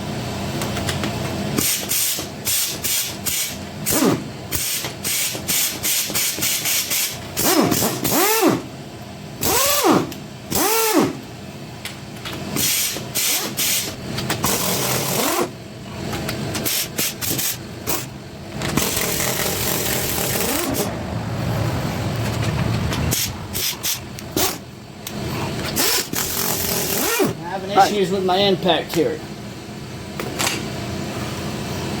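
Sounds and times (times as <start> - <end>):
impact wrench whining: 0.6 - 8.8, 9.4 - 11.3, 12.2 - 21.0, 22.2 - 27.9
impact wrench rattling hammering: 16.1 - 20.9.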